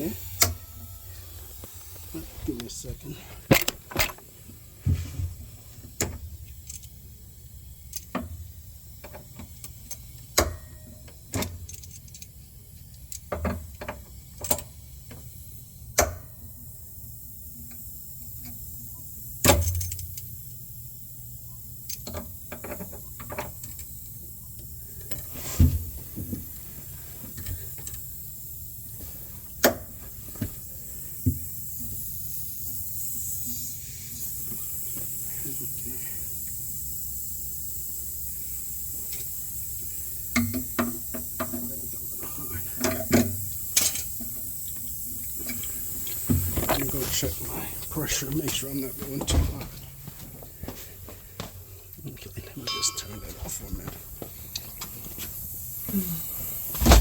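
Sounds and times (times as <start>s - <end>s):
pressurized air hissing: 0.0s - 11.7s, 14.1s - 49.3s, 52.7s - 57.0s.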